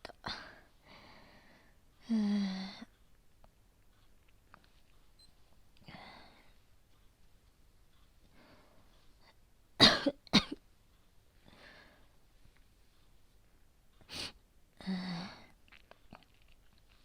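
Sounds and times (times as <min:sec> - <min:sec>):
quiet breaths: 0:00.0 - 0:09.8, 0:10.6 - 0:17.0
woman coughing: 0:09.8 - 0:10.6.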